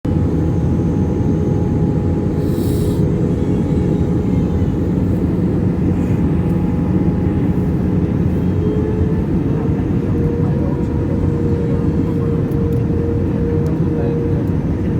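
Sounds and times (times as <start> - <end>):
airplane landing rumble: 0.1 - 14.9
high hiss: 2.4 - 3.1.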